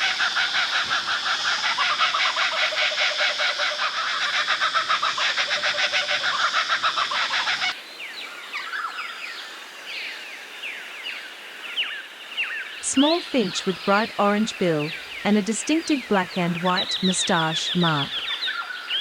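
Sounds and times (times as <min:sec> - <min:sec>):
finches chirping: 0:12.8 - 0:18.5.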